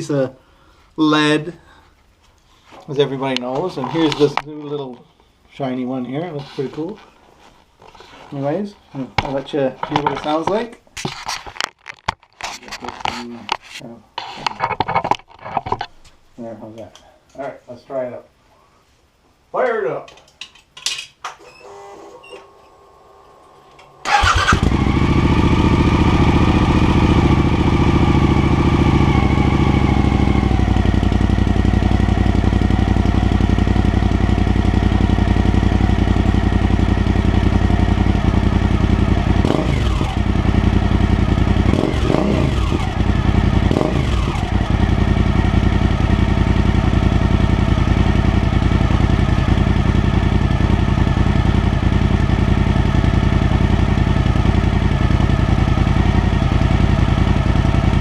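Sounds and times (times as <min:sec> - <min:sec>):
motorcycle starter cranking: 0:24.0 - 0:28.0, 0:39.4 - 0:44.9
engine throttle blips: 0:24.0 - 0:32.7, 0:38.0 - 0:45.0
motorcycle engine idling: 0:24.1 - 0:58.0.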